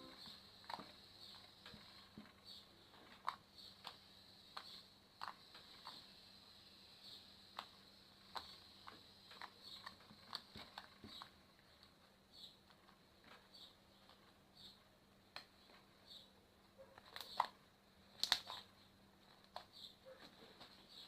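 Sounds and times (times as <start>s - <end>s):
slime clicking and squelching: 17.0s - 18.7s.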